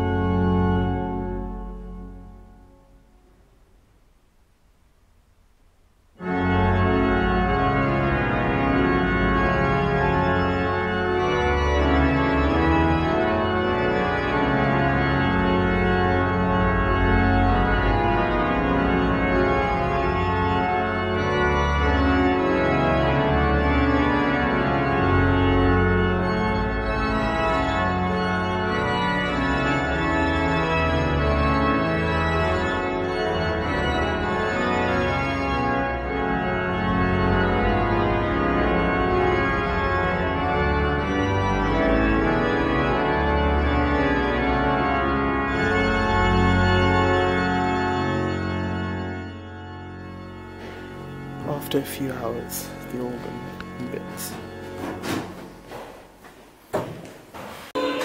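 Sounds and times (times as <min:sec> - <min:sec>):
organ music: 0:00.0 - 0:03.4, 0:06.2 - 0:55.8, 0:57.8 - 0:58.0.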